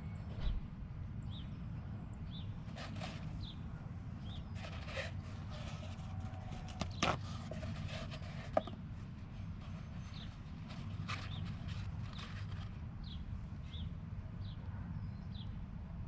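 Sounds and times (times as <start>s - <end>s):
low outdoor rumble: 0.0s - 16.0s
handling knocks and clicks: 4.6s - 8.8s.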